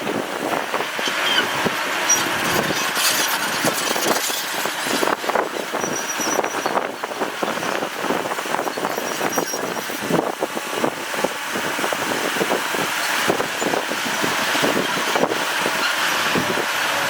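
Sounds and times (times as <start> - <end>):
deep engine rumble: 0.0 - 17.0
clatter and crunch of rock: 0.6 - 11.3.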